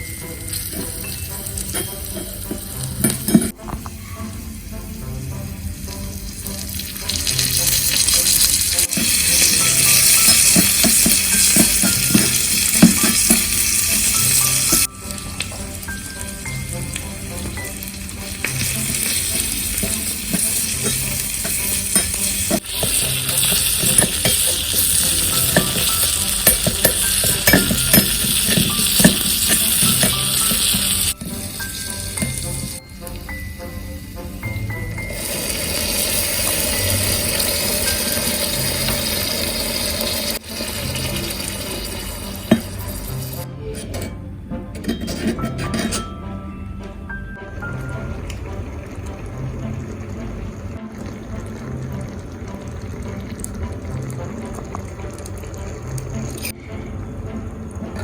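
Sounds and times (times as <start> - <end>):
food sizzling in a pan: 0.0 - 43.4
stirring scrapes and taps: 0.6 - 4.1, 5.8 - 14.9, 16.7 - 32.8, 36.1 - 46.1.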